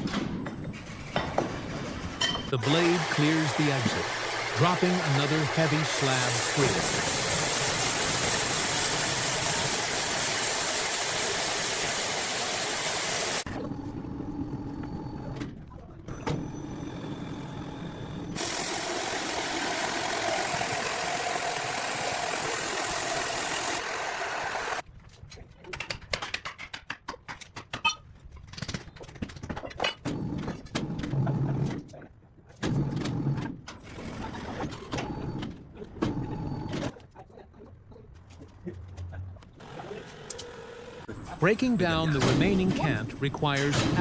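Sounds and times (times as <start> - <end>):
bandsaw mill noise: 2.6 - 13.5, 18.4 - 24.8
machine hum with faint tones: 3.9 - 24.8.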